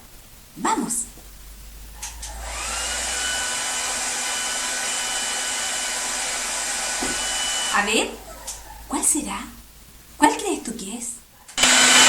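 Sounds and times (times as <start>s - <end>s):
hair dryer blowing: 2.2s - 8.2s, 11.6s - 12.0s.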